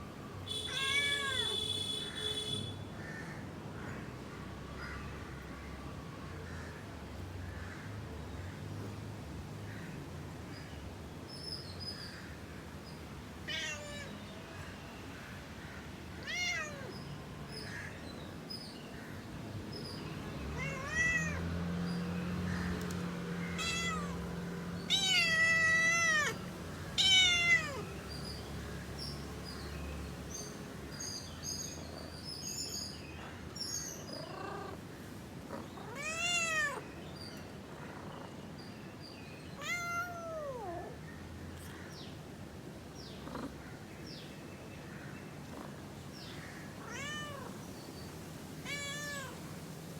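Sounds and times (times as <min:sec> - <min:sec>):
cat meowing: 0:00.5 - 0:02.2, 0:13.4 - 0:14.2, 0:16.2 - 0:17.0, 0:20.6 - 0:21.5, 0:23.4 - 0:28.0, 0:35.8 - 0:36.8, 0:39.6 - 0:41.0, 0:46.8 - 0:47.6, 0:48.6 - 0:49.5.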